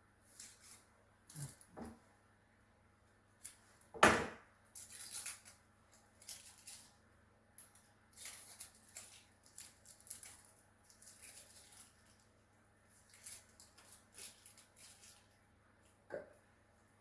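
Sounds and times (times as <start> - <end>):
onion skin crackling and rustling: 4.6 - 16.0.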